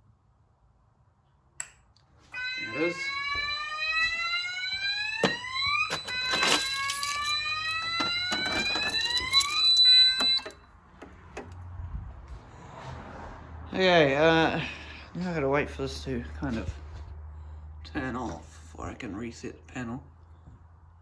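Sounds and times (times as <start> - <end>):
steady high alarm tone: 2.3 - 10.6
electronic alarm sounder sweeping upward: 2.4 - 10.6.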